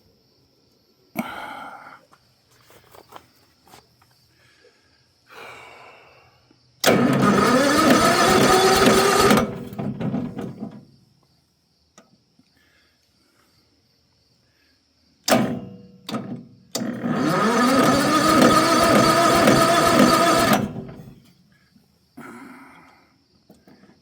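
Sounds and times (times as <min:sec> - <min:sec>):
engine starter cranking: 0:06.8 - 0:10.9, 0:15.3 - 0:21.4.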